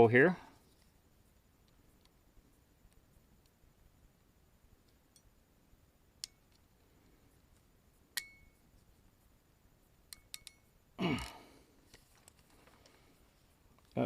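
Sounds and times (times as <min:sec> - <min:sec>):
brief metallic ring: 0:08.2 - 0:08.6.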